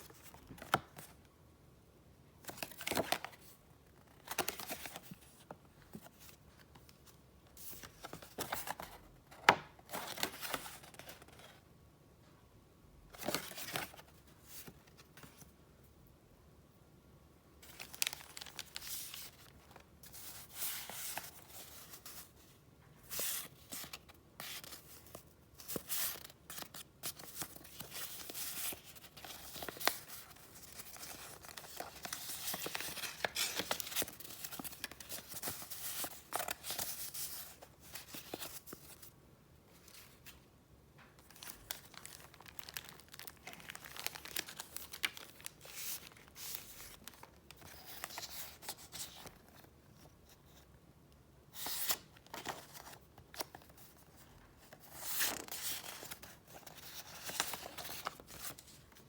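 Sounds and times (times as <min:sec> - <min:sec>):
paper rustling and crinkling: 0:02.4 - 0:11.6, 0:17.6 - 0:22.4, 0:23.1 - 0:39.1, 0:41.2 - 0:50.4, 0:51.6 - 0:59.0.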